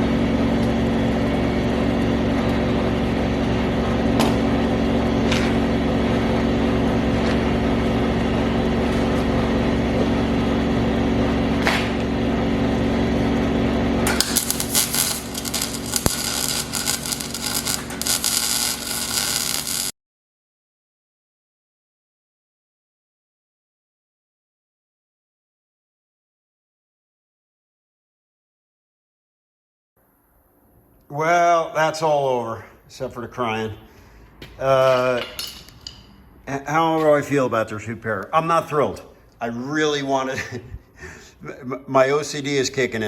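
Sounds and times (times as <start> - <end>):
electric machine hum: 0.0 - 20.0
arc welding crackle: 11.6 - 19.9.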